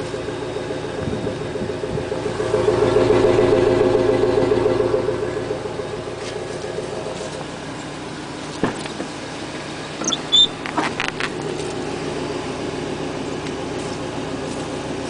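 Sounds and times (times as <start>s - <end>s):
car engine idling: 0.0s - 15.0s
short high squeaks and clicks: 10.0s - 11.2s.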